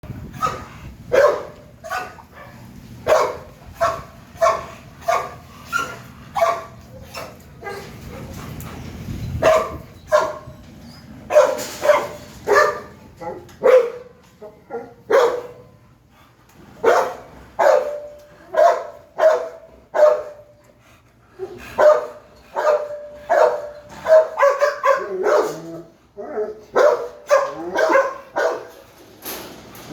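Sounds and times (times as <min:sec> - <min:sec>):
dog barking: 0:00.4 - 0:08.3, 0:09.4 - 0:10.5, 0:11.3 - 0:14.1, 0:14.7 - 0:15.7, 0:16.8 - 0:20.5, 0:21.8 - 0:28.8.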